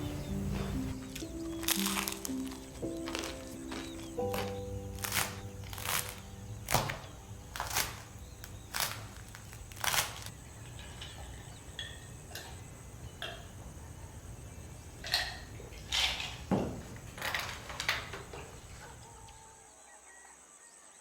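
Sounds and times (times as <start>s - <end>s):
bread crust crunching: 1.0s - 10.4s.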